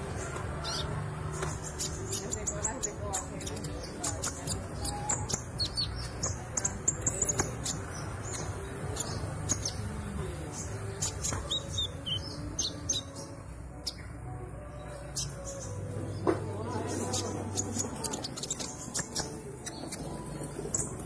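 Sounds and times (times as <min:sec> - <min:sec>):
bird chirps and clicks: 0:00.3 - 0:09.9, 0:16.9 - 0:21.0.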